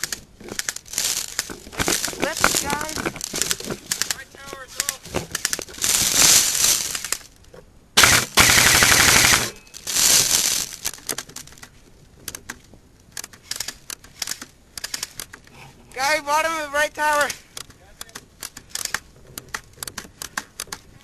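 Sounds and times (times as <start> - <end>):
airsoft guns firing bursts: 8.0 - 9.6
airsoft single shots: 8.0 - 9.6.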